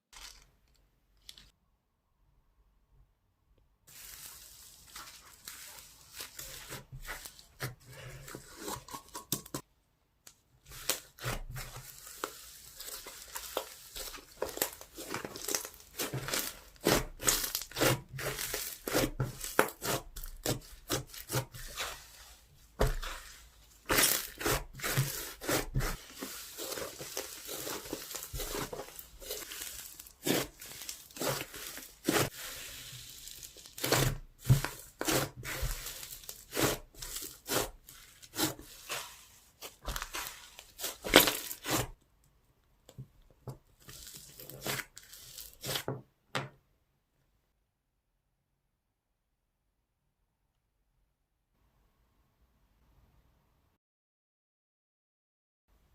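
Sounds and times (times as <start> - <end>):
slime crackling and popping: 10.7 - 21.9, 23.8 - 42.0.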